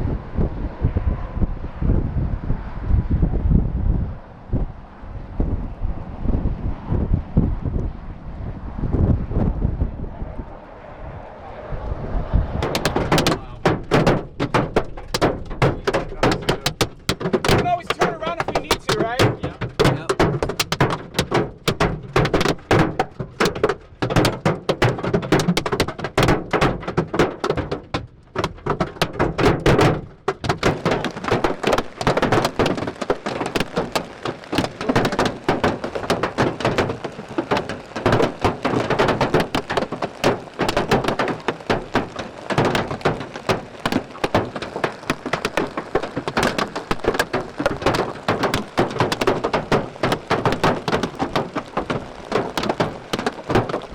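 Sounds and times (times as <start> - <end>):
hailstones hammering on a car roof: 12.4 - 53.9.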